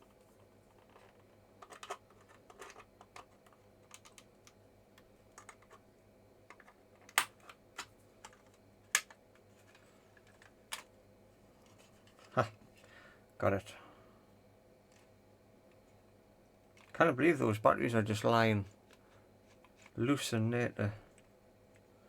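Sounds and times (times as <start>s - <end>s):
plastic case clicking: 9.0s - 9.2s.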